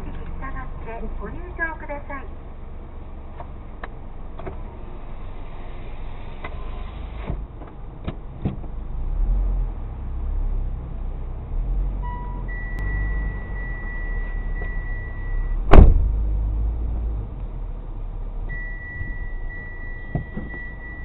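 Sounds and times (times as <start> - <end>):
car engine and tyre rumble: 0.0 - 21.0
high electronic beep tone: 12.1 - 15.6, 18.5 - 21.0.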